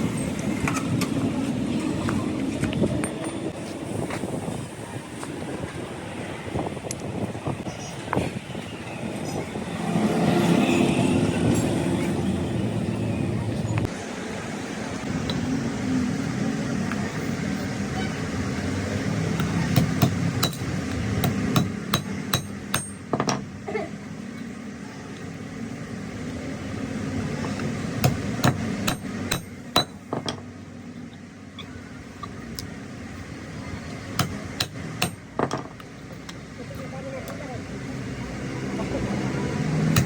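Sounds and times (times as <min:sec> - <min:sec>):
hammer striking metal: 0:19.4 - 0:23.5, 0:28.0 - 0:30.4, 0:34.2 - 0:35.6.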